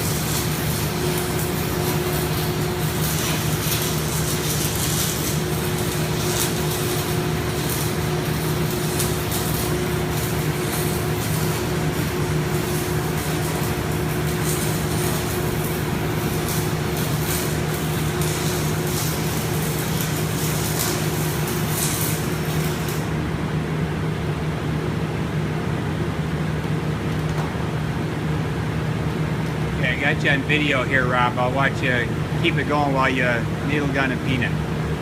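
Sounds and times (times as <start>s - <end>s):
welding arc crackling: 0.0s - 23.3s
smoke collectors humming: 0.0s - 35.0s.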